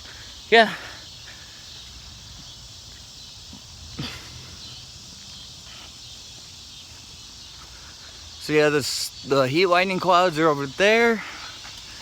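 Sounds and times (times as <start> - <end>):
high insect hum: 0.0 - 12.0
low rumble of wind: 1.2 - 8.4.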